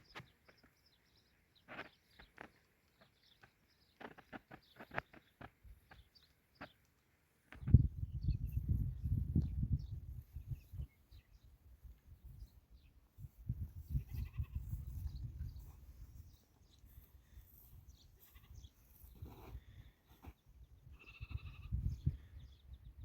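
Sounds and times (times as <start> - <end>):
sheep bleating: 20.9 - 21.7.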